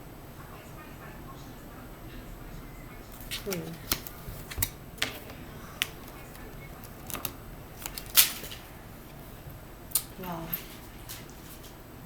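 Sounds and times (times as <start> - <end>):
cards being shuffled: 3.1 - 9.2
card snaps: 3.2 - 8.6.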